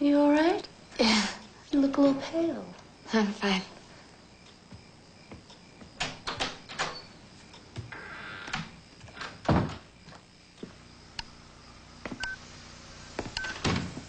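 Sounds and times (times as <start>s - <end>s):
door clicks and knocks: 5.9s - 7.1s, 7.9s - 9.9s
door shutting thud: 6.0s - 7.1s, 7.8s - 9.9s, 13.5s - 14.0s.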